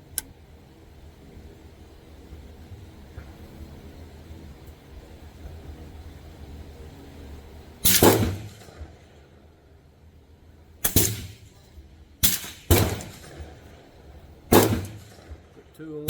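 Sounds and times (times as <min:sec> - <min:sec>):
rifle shots: 0:07.8 - 0:09.2, 0:10.8 - 0:15.7.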